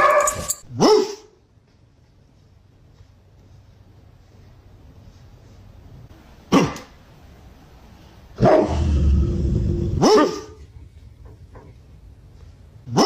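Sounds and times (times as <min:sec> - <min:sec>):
dog barking: 0:00.0 - 0:01.3, 0:08.4 - 0:08.8, 0:10.0 - 0:10.6.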